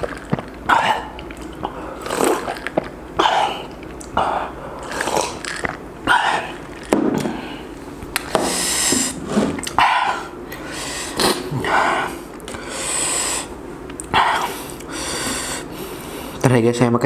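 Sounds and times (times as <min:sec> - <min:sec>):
wet chewing of fried chicken: 0:00.0 - 0:06.9.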